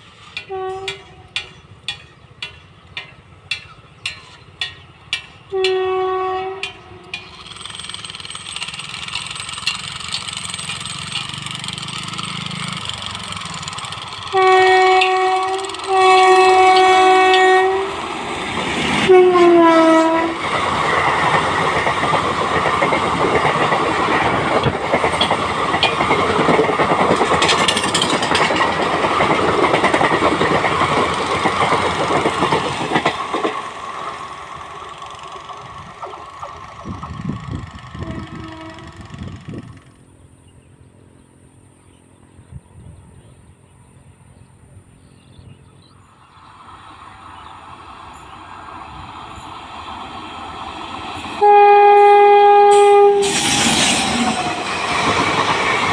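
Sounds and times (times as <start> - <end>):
train coaches rumbling and clattering: 0.0 - 40.4, 42.3 - 55.9
locomotive horn blasts: 0.5 - 1.2, 5.5 - 7.1, 14.3 - 18.0, 19.1 - 20.4, 37.9 - 39.4, 51.4 - 53.4.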